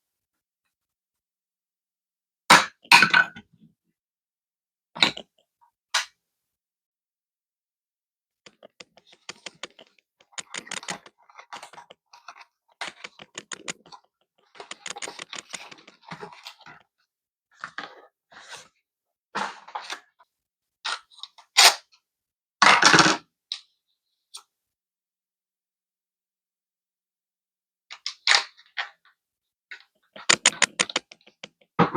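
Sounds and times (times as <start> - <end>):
clicks and scrapes of pc hardware: 8.5 - 12.0, 12.8 - 16.4, 30.3 - 31.6.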